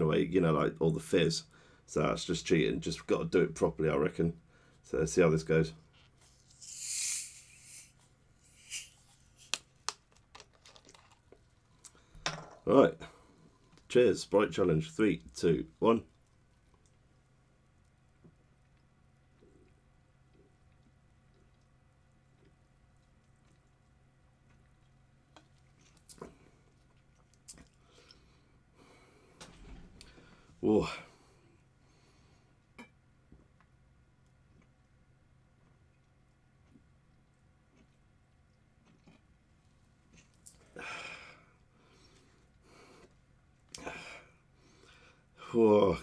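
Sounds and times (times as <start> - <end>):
carbonation hissing from bottle: 6.4 - 9.6.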